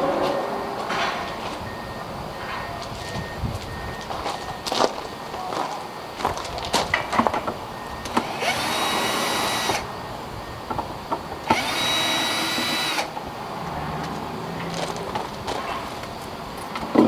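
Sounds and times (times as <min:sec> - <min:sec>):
cordless drill whining: 0:08.0 - 0:10.0, 0:11.4 - 0:13.2.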